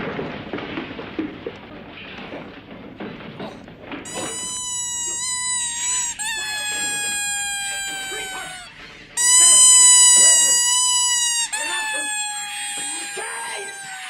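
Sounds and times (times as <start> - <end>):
squeaky dog toy squealing: 4.1 - 14.0.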